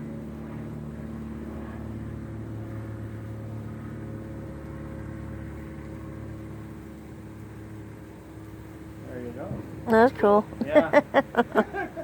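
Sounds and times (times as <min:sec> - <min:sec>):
low engine-like hum with held tones: 0:00.0 - 0:12.0.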